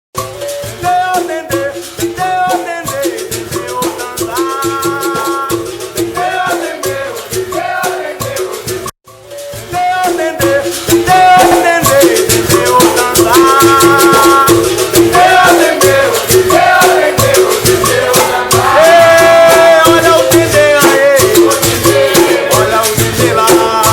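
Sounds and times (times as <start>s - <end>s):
berimbau struck in rhythm: 0.2s - 23.9s
shaker rattle: 0.2s - 23.9s
person singing: 9.7s - 23.9s.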